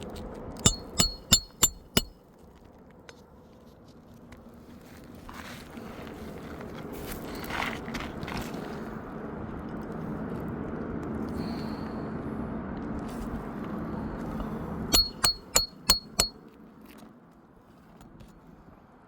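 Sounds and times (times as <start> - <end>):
hammer blows on metal: 0.6 - 2.1, 15.0 - 16.4.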